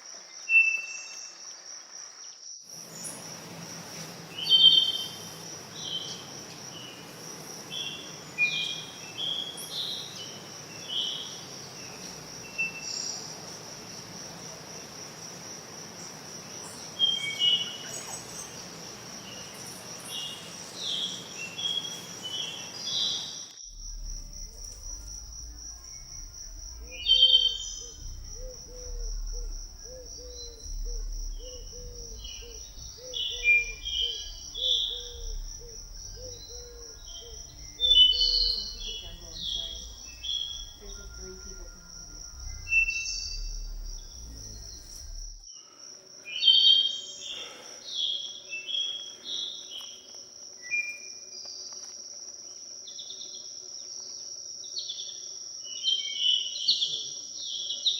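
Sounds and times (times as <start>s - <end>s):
background hiss: 0.0s - 57.9s
high-pitched insect drone: 2.7s - 57.9s
birds singing: 2.8s - 13.3s, 24.3s - 45.1s
low repeated animal call: 23.6s - 45.5s.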